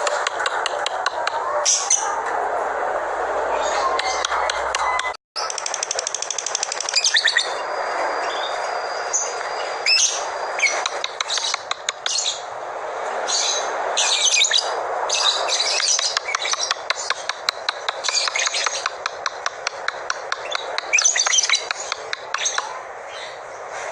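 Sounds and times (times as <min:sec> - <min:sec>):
songbird chirps and trills: 0:13.3 - 0:23.7.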